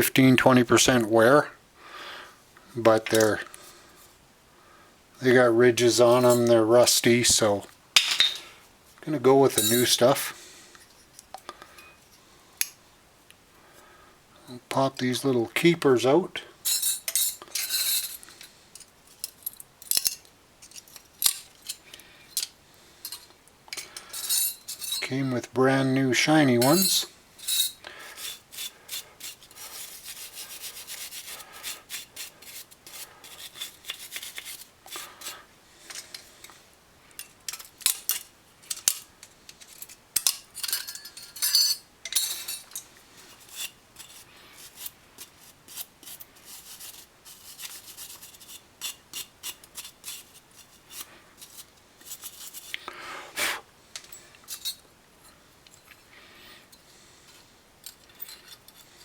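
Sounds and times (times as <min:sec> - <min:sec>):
metal clips clicking and scraping: 0:16.7 - 0:25.1, 0:35.9 - 0:42.9.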